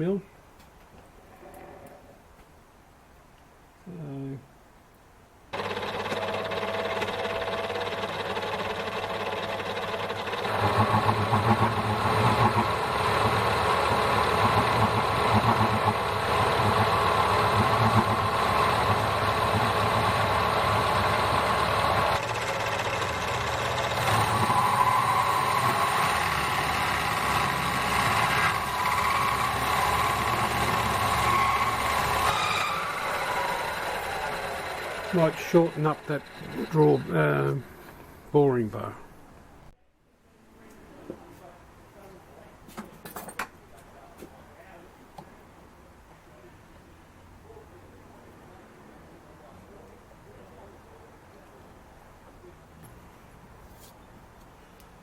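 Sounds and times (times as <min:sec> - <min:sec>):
metal lathe cutting: 0:05.6 - 0:37.7.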